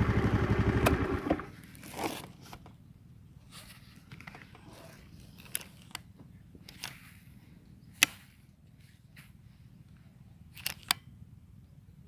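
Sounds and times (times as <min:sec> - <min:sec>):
small engine running: 0:00.0 - 0:01.6
faint rustling and crunching: 0:01.5 - 0:02.8, 0:03.4 - 0:10.9.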